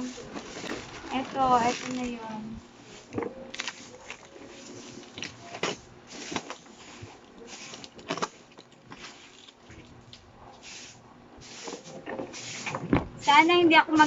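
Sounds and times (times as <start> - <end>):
packaging rustling: 0.0 - 2.4, 3.0 - 10.1.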